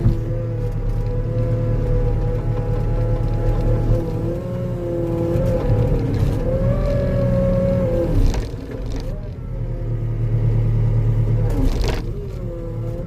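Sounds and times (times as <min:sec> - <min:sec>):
skid steer engine whining: 0:00.0 - 0:13.0.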